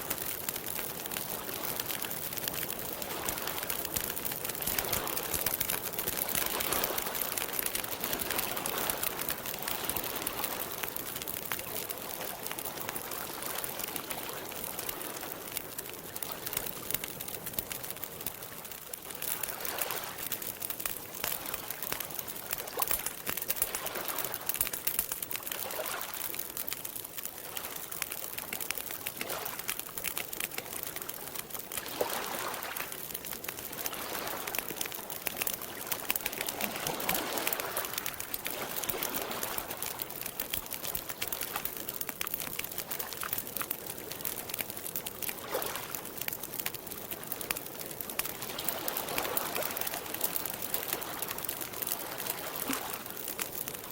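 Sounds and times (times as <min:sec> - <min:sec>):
campfire crackling: 0:00.0 - 0:53.9
water lapping: 0:19.0 - 0:24.7, 0:31.7 - 0:33.0, 0:33.6 - 0:41.9, 0:45.2 - 0:46.0, 0:48.1 - 0:53.2.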